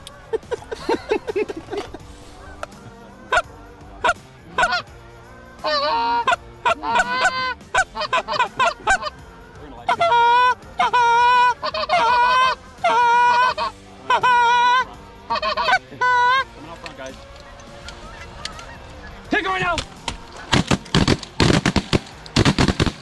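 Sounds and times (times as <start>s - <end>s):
goose honking: 4.0s - 4.8s, 5.6s - 9.2s, 9.9s - 22.9s.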